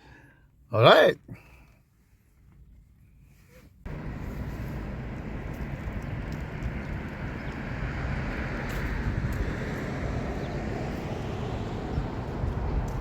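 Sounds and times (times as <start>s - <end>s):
vehicle rumble: 3.9s - 13.0s.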